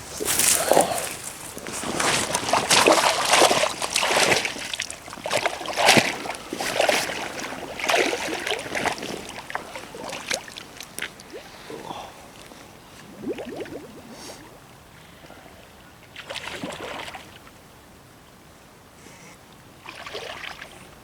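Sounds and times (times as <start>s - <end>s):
fish splashing in water: 0.0s - 11.5s.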